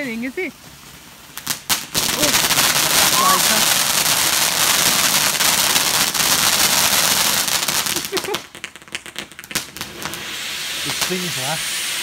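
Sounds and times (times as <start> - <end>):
firework crackling and popping: 0.0 - 12.0.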